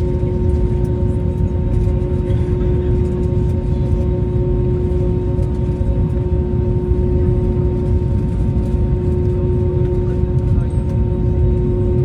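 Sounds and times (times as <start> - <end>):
jet engines running: 0.0 - 12.0.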